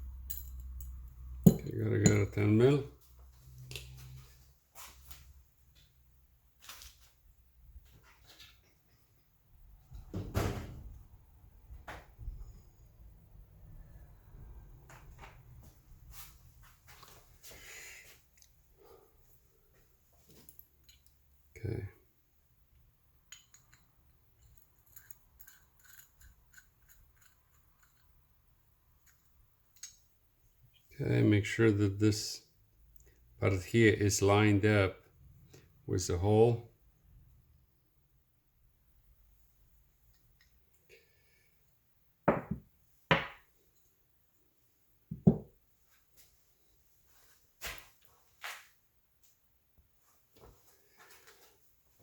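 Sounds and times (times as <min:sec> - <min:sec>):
tools knocking on workbench: 0:01.5 - 0:02.2, 0:42.3 - 0:43.4, 0:45.1 - 0:45.5
light metal clicks and scrapes: 0:23.3 - 0:28.2.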